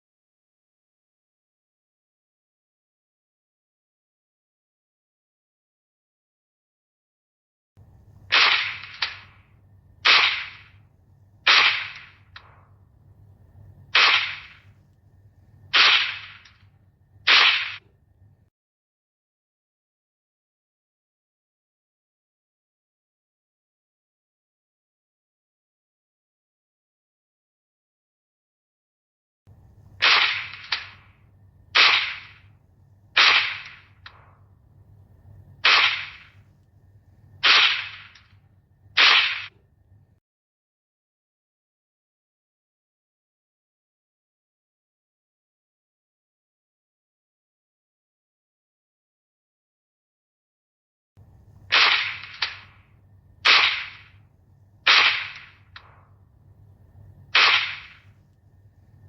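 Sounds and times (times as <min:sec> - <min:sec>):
pistol shots: 0:08.3 - 0:10.8, 0:11.5 - 0:12.7, 0:13.9 - 0:14.7, 0:15.7 - 0:16.6, 0:17.3 - 0:17.9, 0:30.0 - 0:31.2, 0:31.8 - 0:32.5, 0:33.2 - 0:34.4, 0:35.6 - 0:36.4, 0:37.4 - 0:38.3, 0:39.0 - 0:39.6, 0:51.7 - 0:52.8, 0:53.4 - 0:54.2, 0:54.9 - 0:56.1, 0:57.3 - 0:58.1.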